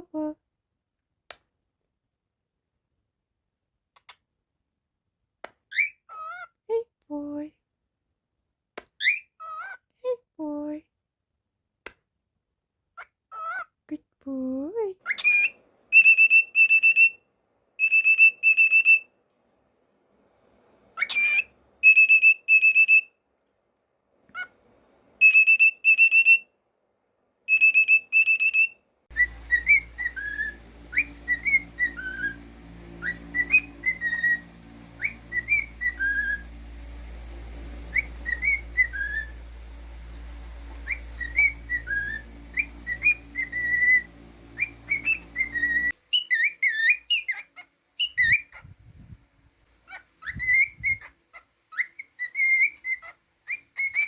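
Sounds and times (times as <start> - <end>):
cockatiel whistling and chirping: 5.7 - 6.4, 9.0 - 9.8, 15.1 - 17.2, 17.8 - 19.1, 21.0 - 23.1, 25.2 - 26.5, 27.5 - 48.7, 49.9 - 54.0
low hum: 29.1 - 46.0.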